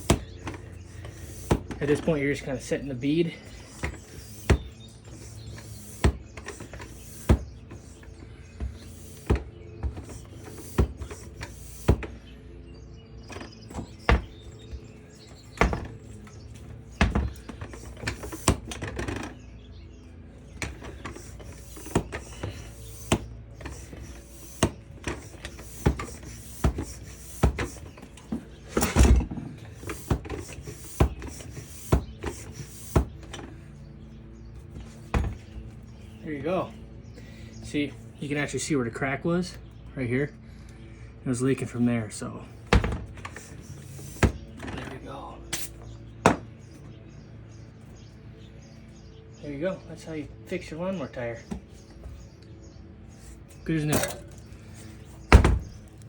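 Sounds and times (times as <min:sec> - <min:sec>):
hand pump strokes with knocks: 0:00.0 - 0:12.2, 0:13.3 - 0:19.4, 0:20.5 - 0:33.6, 0:34.6 - 0:35.6, 0:42.7 - 0:44.9, 0:53.2 - 0:56.0.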